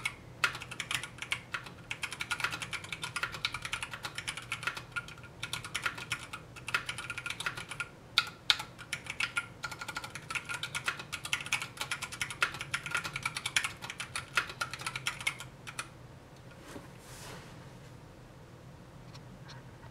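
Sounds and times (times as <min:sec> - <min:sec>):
mechanical keyboard typing: 0:00.0 - 0:15.9.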